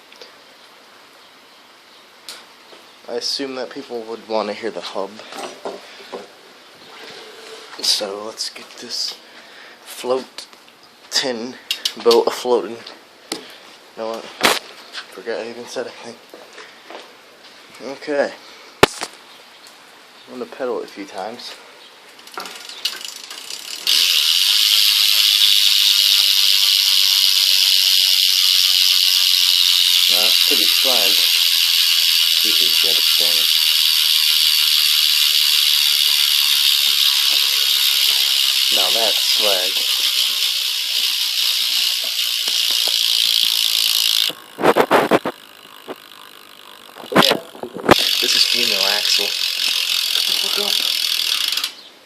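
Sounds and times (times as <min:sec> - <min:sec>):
bicycle hub pawls clicking: 0:11.5 - 0:12.4, 0:22.1 - 0:51.9.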